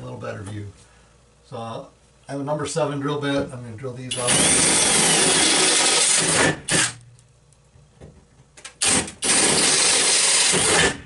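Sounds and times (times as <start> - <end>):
power drill drilling metal: 4.1 - 7.0, 8.8 - 11.0.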